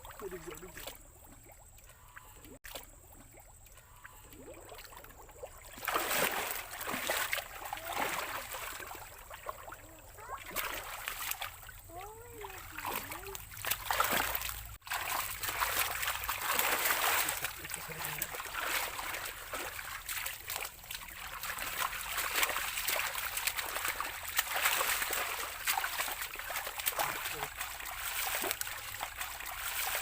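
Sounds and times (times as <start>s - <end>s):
shallow water splashing: 0.0s - 30.0s.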